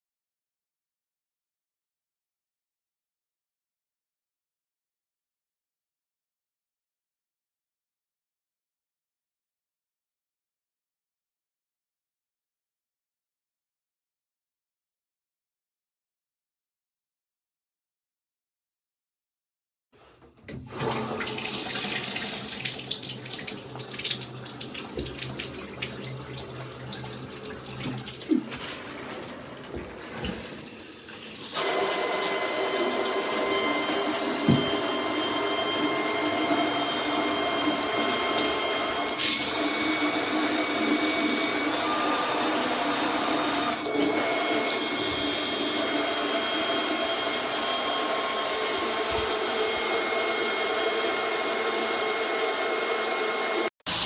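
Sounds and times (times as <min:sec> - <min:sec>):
shower head spraying water: 0:21.6 - 0:41.1.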